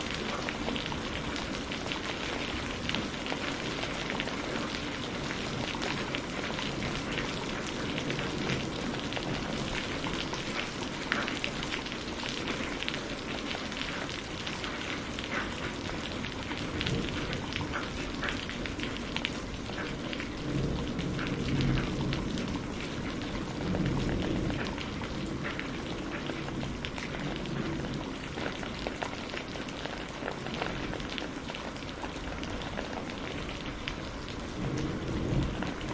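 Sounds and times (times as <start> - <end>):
heavy rain falling: 0.0 - 35.9
distant thunder rumbling: 15.2 - 35.9.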